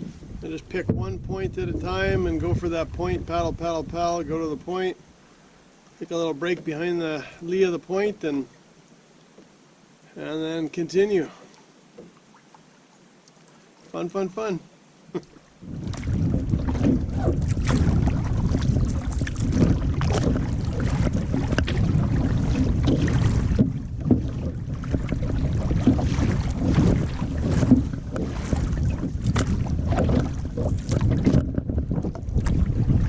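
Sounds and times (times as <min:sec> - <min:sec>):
wind buffeting microphone: 0:00.0 - 0:04.6, 0:15.6 - 0:33.0
waves splashing: 0:00.0 - 0:33.0
paddle strokes against canoe: 0:15.2 - 0:33.0.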